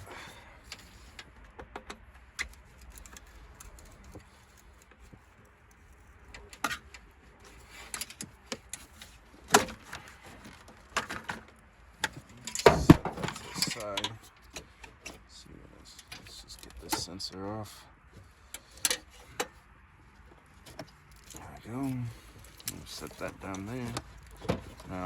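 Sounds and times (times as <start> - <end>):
engine parts clicking and rattling: 0.0 - 25.0.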